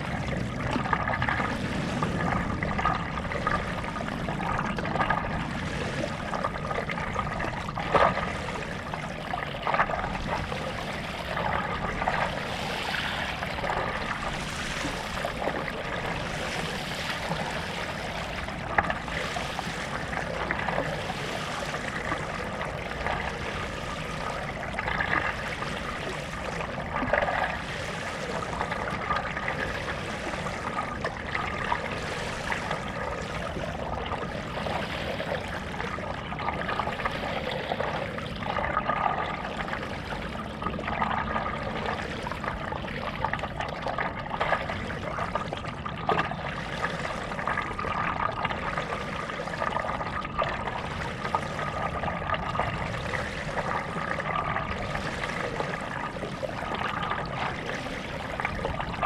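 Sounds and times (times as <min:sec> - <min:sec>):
paddle splashing in water: 0:00.0 - 0:59.0
water dribbling off paddle: 0:00.0 - 0:59.0.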